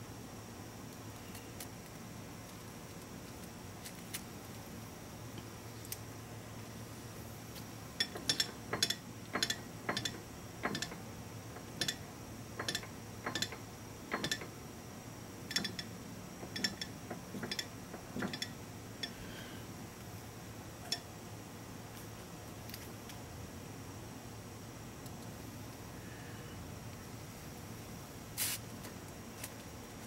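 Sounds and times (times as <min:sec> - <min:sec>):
steady low hum: 0:00.0 - 0:30.0
lathe handwheel metallic clicks: 0:08.0 - 0:11.0, 0:12.6 - 0:14.5.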